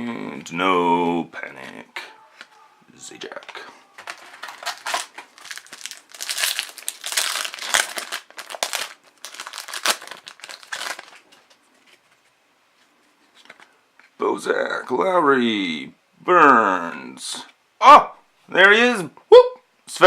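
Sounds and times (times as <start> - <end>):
card pack wrapper crinkling: 3.3 - 12.2.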